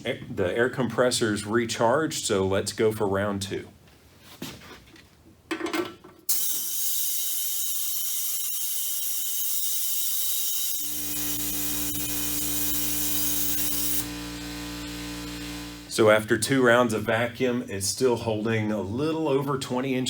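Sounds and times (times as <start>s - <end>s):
compressed air hissing: 6.3s - 14.1s
air compressor motor humming: 10.7s - 16.0s.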